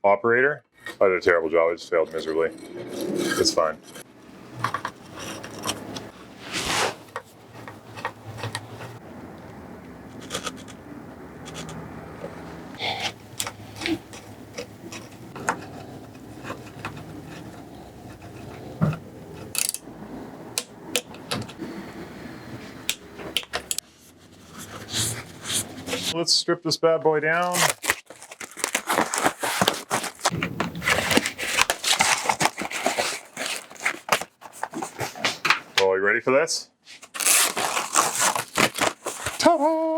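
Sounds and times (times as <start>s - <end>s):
short scrape: 2.4s - 7.2s, 23.8s - 26.2s
tools clicking and tapping: 13.0s - 19.9s, 20.5s - 21.6s, 22.8s - 23.8s
packaging wrap ripping: 27.4s - 35.0s, 37.1s - 39.5s
packaging wrap crinkling: 27.4s - 35.3s, 37.0s - 39.5s.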